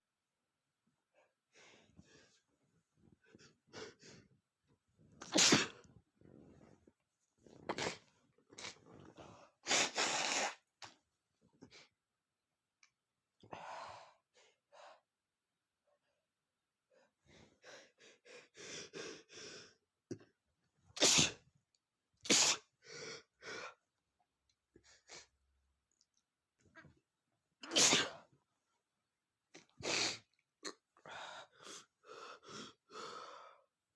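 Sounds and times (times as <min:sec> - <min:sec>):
man sneezing: 0:05.2 - 0:05.8, 0:27.6 - 0:28.2.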